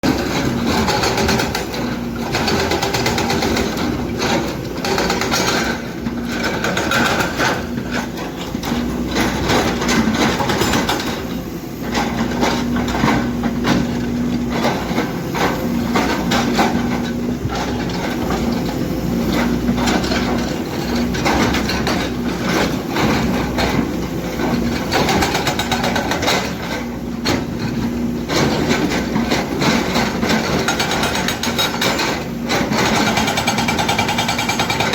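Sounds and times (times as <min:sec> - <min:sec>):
excavator diesel engine running: 0:00.0 - 0:34.9
hydraulic breaker hammering stone: 0:00.1 - 0:11.3, 0:19.4 - 0:34.9.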